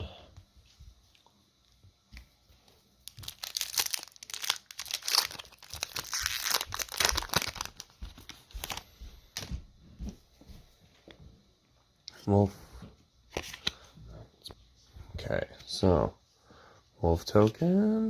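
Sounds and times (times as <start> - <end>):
foil wrapper tearing and crinkling: 3.0 - 8.8.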